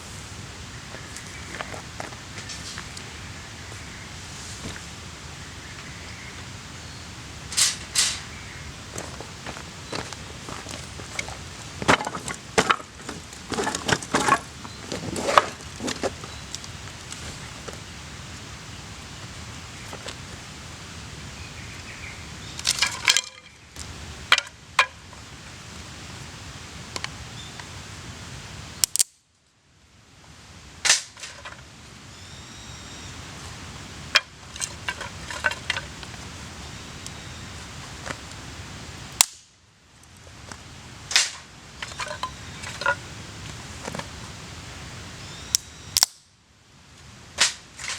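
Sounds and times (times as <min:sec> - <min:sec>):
wood fire crackling and popping: 0:28.8 - 0:29.2, 0:40.0 - 0:43.9.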